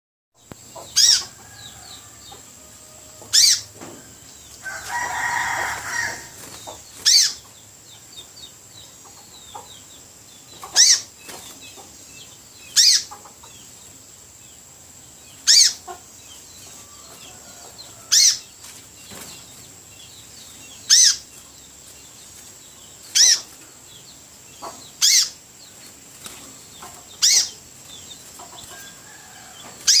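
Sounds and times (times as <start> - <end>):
rustling fluttering noise: 16.6 - 19.8, 25.7 - 30.0.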